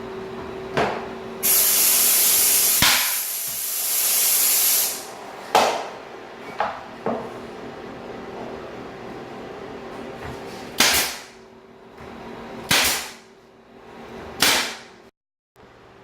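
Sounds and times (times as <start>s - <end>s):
nail gun firing: 2.6s - 3.6s, 10.8s - 11.3s, 12.7s - 13.2s, 14.4s - 14.9s.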